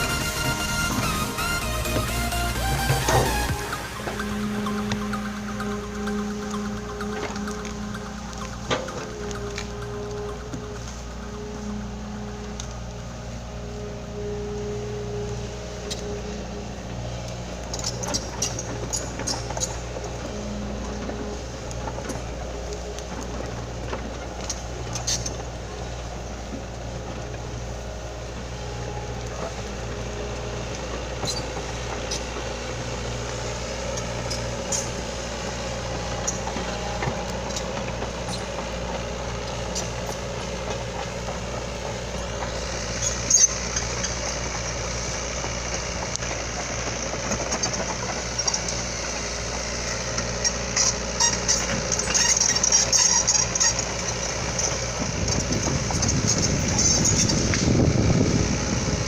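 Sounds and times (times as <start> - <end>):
diesel engine running: 0.0 - 59.0.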